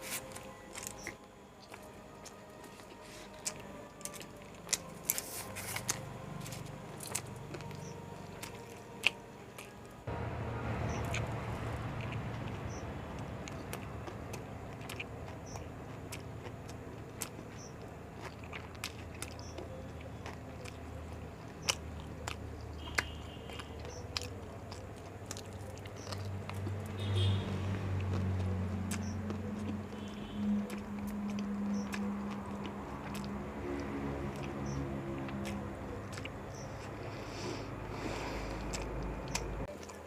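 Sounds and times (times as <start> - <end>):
steady low hum: 0.0 - 27.0, 27.6 - 40.0
chewing and biting food: 0.0 - 40.0
wet mouth clicks: 28.0 - 40.0.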